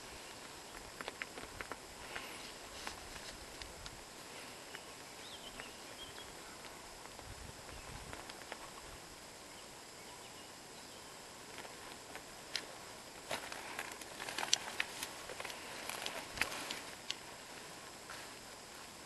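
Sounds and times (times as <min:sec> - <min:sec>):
quiet outdoor ambience: 0:00.0 - 0:19.0
footsteps on forest path: 0:00.3 - 0:03.7, 0:13.2 - 0:18.4
bird chirp: 0:04.6 - 0:06.6, 0:09.5 - 0:11.2.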